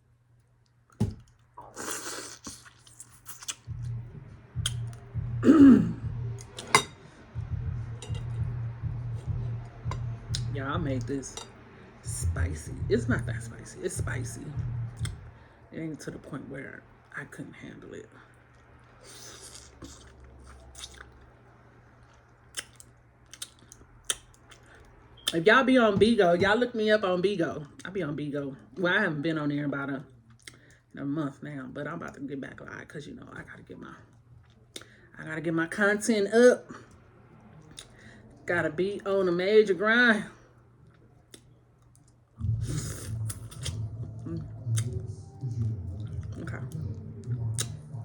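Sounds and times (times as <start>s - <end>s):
person chewing and smacking: 0.9s - 4.0s, 4.6s - 5.0s, 14.9s - 15.3s, 19.2s - 21.2s, 22.0s - 25.4s, 40.8s - 48.0s
harsh throat sound: 3.4s - 10.6s, 42.4s - 48.0s.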